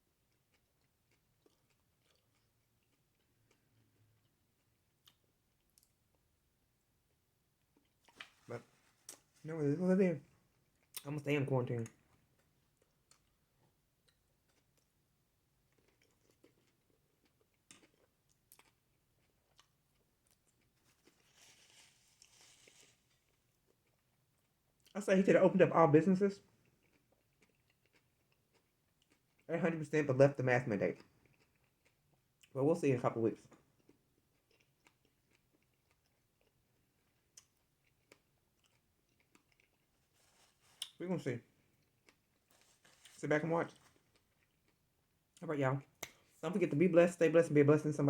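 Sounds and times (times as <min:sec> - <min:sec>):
chewing and mouth clicks: 0:00.2 - 0:06.2, 0:07.6 - 0:09.3, 0:11.8 - 0:15.0, 0:15.6 - 0:25.0, 0:26.4 - 0:29.5, 0:30.9 - 0:32.6, 0:33.5 - 0:41.0, 0:41.7 - 0:46.4
soft crunchy rustle: 0:07.8 - 0:13.4, 0:15.7 - 0:24.1, 0:37.9 - 0:44.9.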